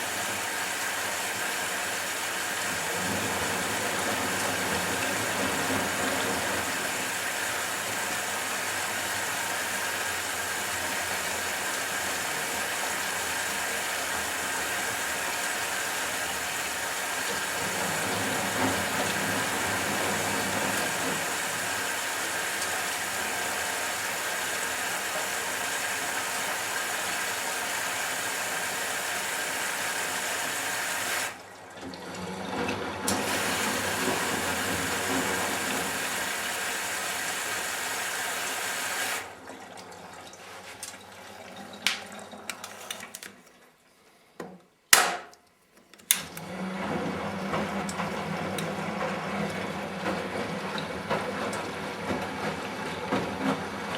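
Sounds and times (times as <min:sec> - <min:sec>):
washing machine running: 0:00.0 - 0:43.2, 0:46.1 - 0:53.9.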